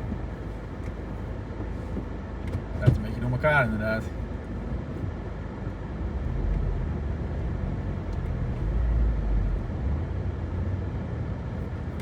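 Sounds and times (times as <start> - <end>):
car engine rumbling: 0.0 - 12.0.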